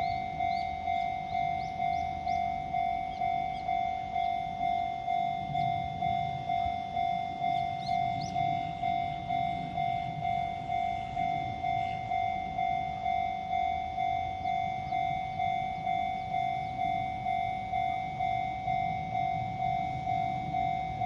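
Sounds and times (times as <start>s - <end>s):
level-crossing electronic bell: 0.0s - 21.0s.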